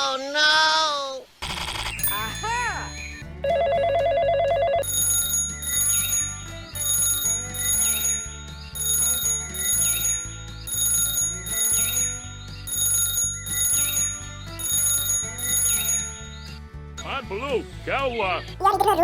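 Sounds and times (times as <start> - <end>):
looping music with chiming tones: 2.0 - 3.3, 4.9 - 16.2.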